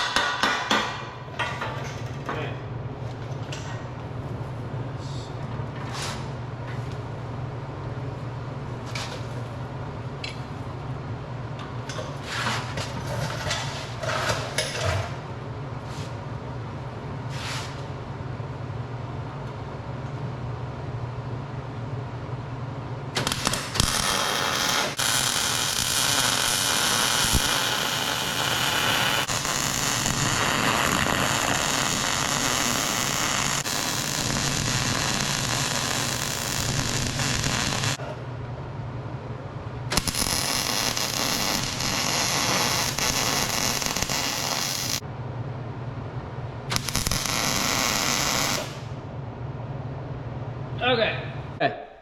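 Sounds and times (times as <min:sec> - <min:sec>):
electric arc welding crackling: 0:23.2 - 0:38.0, 0:39.9 - 0:45.0, 0:46.7 - 0:48.9.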